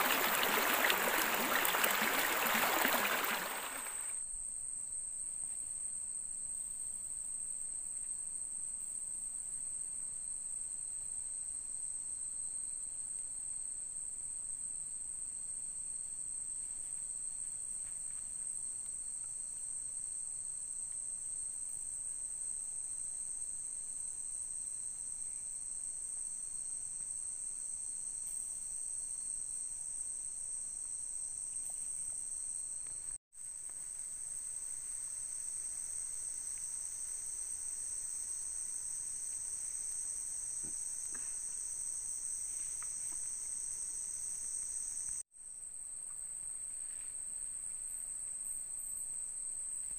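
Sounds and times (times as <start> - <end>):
night insects trilling: 0.0 - 4.2, 27.6 - 45.2.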